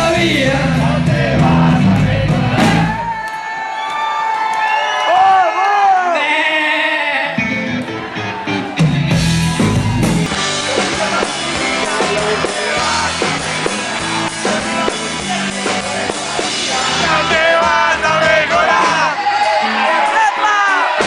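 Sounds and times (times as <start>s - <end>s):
rock band playing: 0.0s - 3.2s, 7.2s - 21.0s
drum kit: 0.0s - 3.3s, 7.4s - 21.0s.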